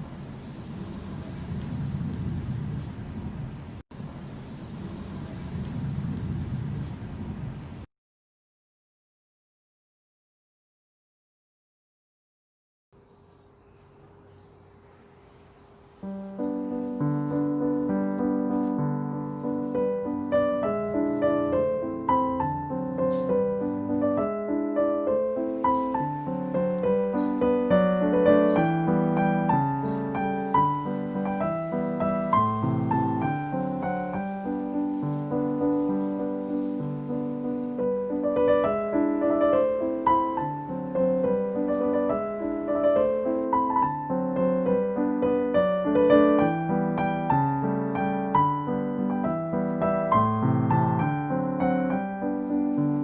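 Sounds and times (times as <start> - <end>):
gentle piano music: 14.8 - 53.0.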